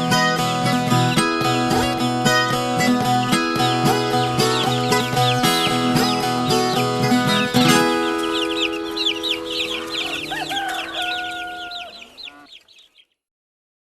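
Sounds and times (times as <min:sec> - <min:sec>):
guitar chord ringing: 0:00.0 - 0:11.3
high bird chirping: 0:00.1 - 0:13.2
rooster crowing: 0:08.1 - 0:12.8.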